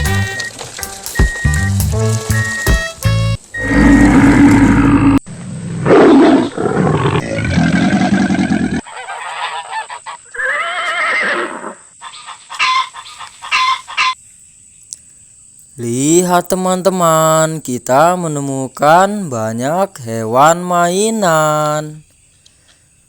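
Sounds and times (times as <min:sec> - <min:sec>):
geese honking: 0:12.0 - 0:14.2.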